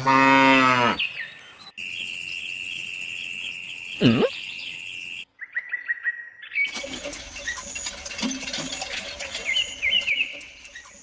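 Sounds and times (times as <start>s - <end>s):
high-pitched chirping calls: 2.8s - 5.2s.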